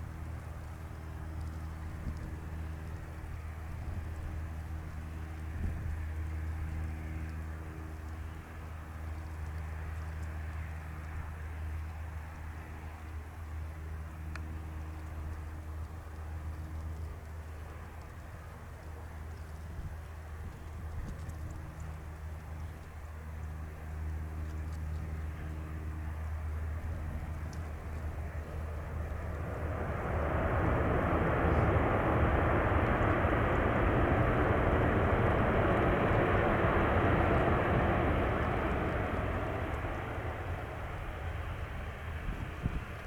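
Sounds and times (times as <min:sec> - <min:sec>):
low steady hum: 0:00.0 - 0:43.0
jet engine roar: 0:11.7 - 0:43.0.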